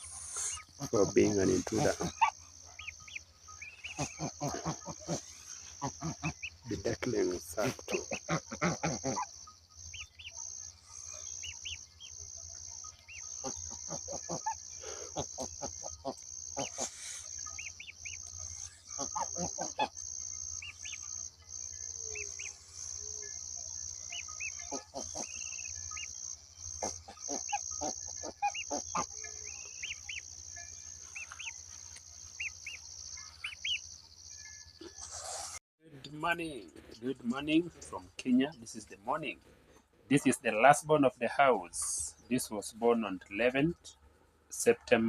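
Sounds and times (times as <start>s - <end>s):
geese honking: 0.0s - 33.8s
goslings peeping: 0.0s - 34.0s.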